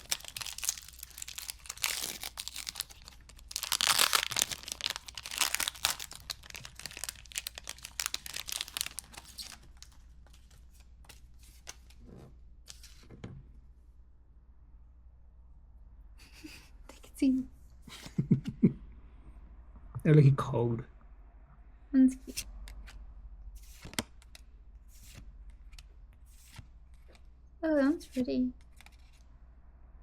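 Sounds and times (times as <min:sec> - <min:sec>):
foil wrapper tearing and crinkling: 0:00.0 - 0:10.0.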